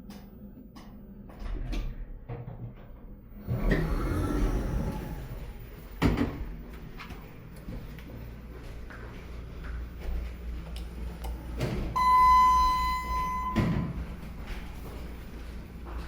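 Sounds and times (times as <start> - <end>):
elevator doors sliding: 3.4 - 6.5.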